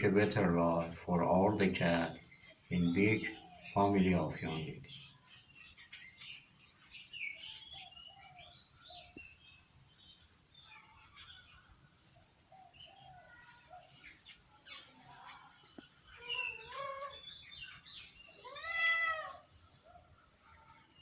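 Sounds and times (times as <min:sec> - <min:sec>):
bird chirps and warbling: 0:00.0 - 0:09.5, 0:12.6 - 0:19.4
high-pitched insect chorus: 0:00.0 - 0:21.0.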